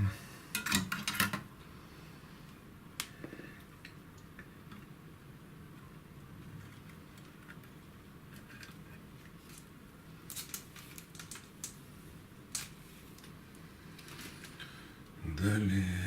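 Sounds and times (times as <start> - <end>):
faint low hum: 0.0 - 16.0
small objects clicking: 10.3 - 11.8.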